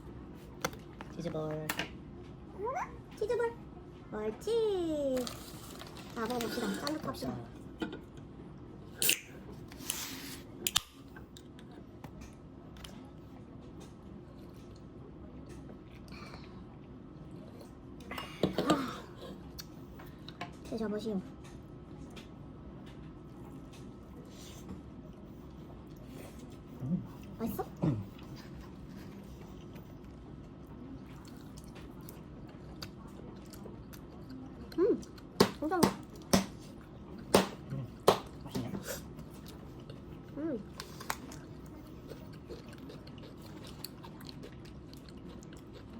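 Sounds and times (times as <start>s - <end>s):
low background hum: 0.0s - 45.9s
chewing: 28.0s - 35.3s, 38.4s - 45.9s.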